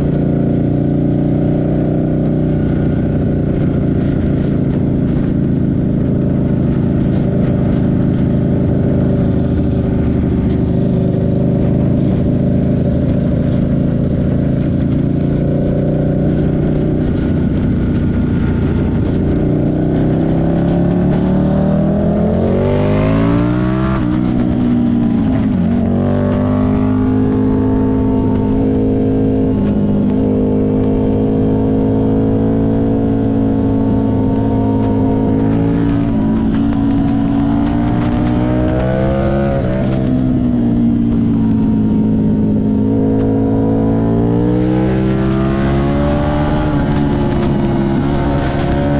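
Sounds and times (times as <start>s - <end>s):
motorcycle engine revving: 0.0s - 48.9s.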